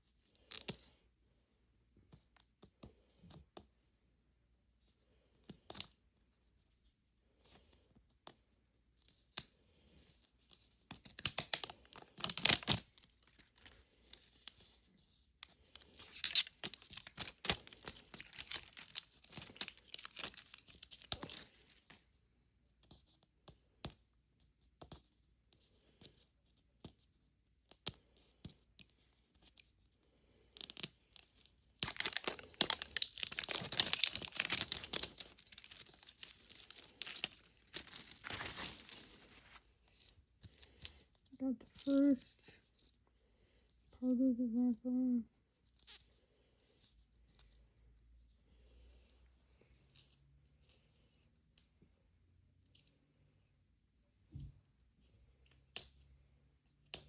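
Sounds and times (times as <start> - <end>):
plastic wrapper crinkling: 10.9 - 14.7, 15.7 - 22.0, 31.8 - 39.6.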